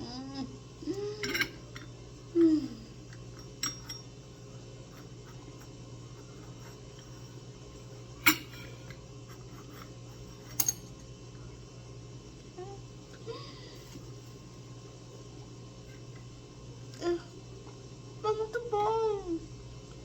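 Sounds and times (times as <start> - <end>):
person humming mmm: 0.0 - 1.4, 2.3 - 3.0
utensils clicking against plate: 10.4 - 10.9.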